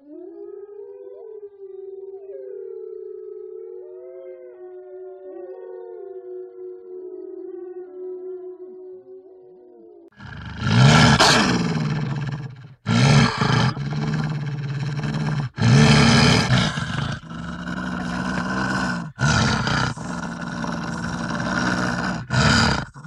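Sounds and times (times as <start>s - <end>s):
wolf growling: 10.2s - 23.0s.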